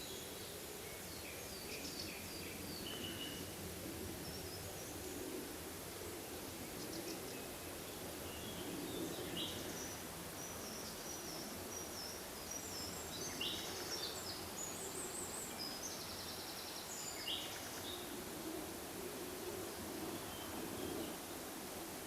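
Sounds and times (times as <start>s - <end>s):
steady background hiss: 0.0s - 22.0s
songbirds singing: 6.6s - 18.2s.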